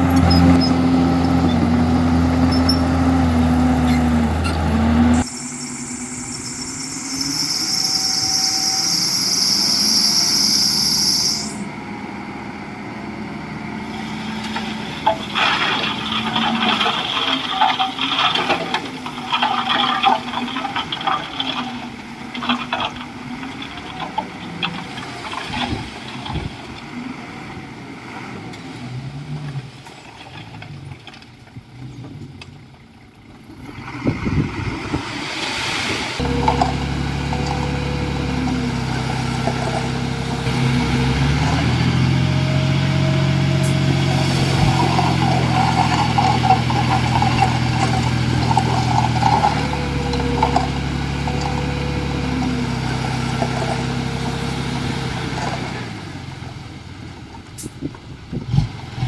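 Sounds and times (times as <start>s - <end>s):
bulldozer diesel engine: 0.0s - 59.0s
loud hiss: 5.2s - 11.7s.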